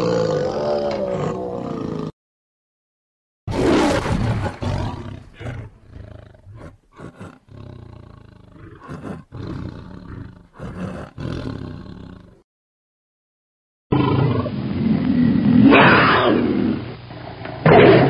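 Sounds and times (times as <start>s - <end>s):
tiger roaring and growling: 0.0s - 2.1s, 3.5s - 12.4s.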